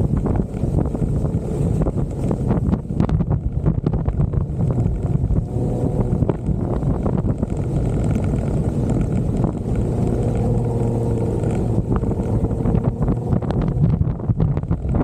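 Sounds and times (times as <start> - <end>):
car engine running: 0.0 - 15.0
wind buffeting microphone: 0.0 - 15.0
small knocks and rattles: 6.2 - 15.0.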